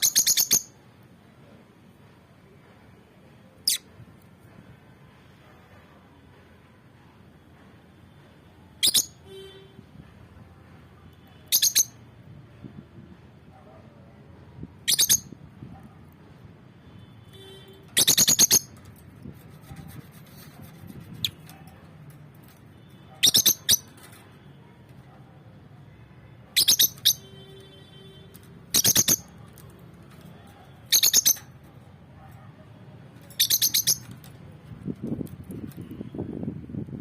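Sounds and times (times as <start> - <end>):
bird chirping: 0.0 - 0.7, 23.2 - 24.0, 26.6 - 27.3, 28.7 - 29.3, 30.9 - 31.5, 33.2 - 34.2.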